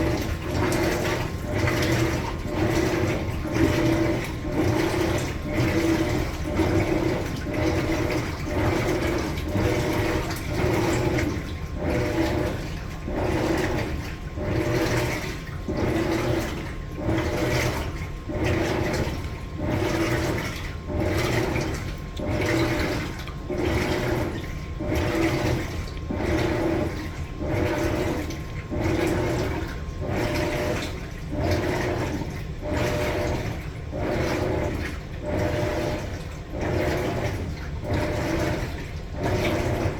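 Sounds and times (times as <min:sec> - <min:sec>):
faint motor hum: 0:00.0 - 0:39.9
washing machine swishing water: 0:00.0 - 0:39.9.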